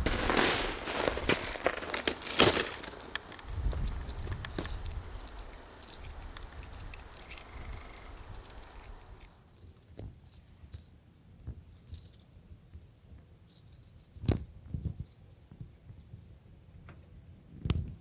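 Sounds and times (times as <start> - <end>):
light rustling and rattling: 0.0 - 9.3.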